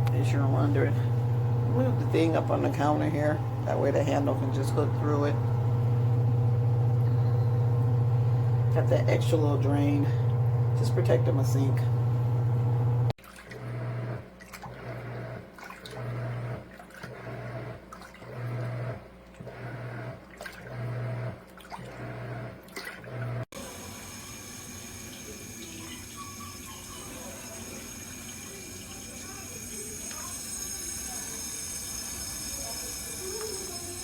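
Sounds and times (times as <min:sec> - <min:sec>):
washing machine motor hum: 0:00.0 - 0:34.0.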